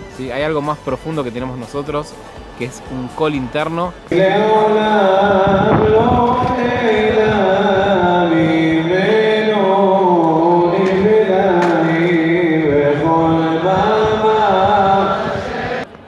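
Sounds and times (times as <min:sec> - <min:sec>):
chant-like singing: 0:00.0 - 0:16.0.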